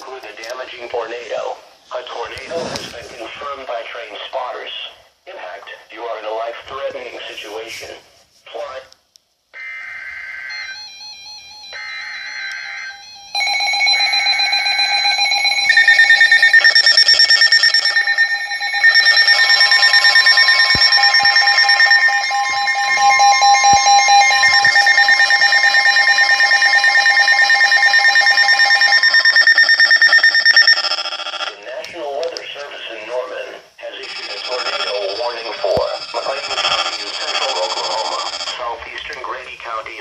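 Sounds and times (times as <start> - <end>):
electronic alert beeping tones: 13.4 - 31.5.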